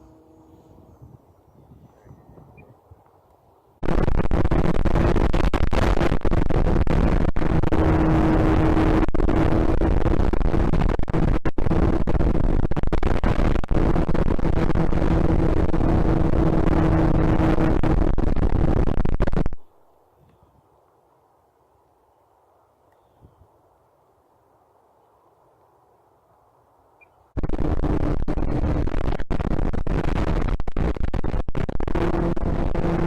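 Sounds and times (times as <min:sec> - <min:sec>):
electric motor and propeller hum: 0:00.0 - 0:02.6, 0:03.8 - 0:19.6, 0:27.4 - 0:33.0
wind buffeting microphone: 0:00.0 - 0:03.0.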